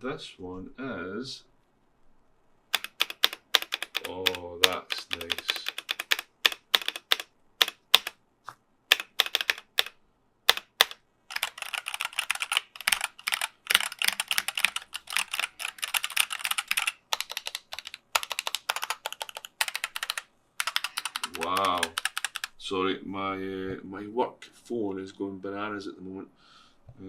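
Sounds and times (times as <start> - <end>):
mechanical keyboard typing: 2.7 - 8.2, 8.9 - 22.5.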